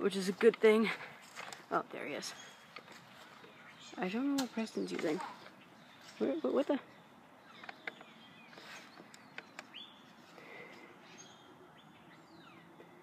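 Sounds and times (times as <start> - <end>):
faint clicks: 7.6 - 8.2.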